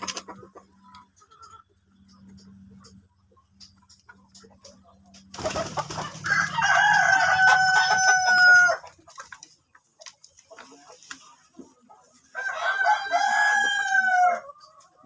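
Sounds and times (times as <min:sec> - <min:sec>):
rooster crowing: 0:06.2 - 0:08.8, 0:12.4 - 0:14.5.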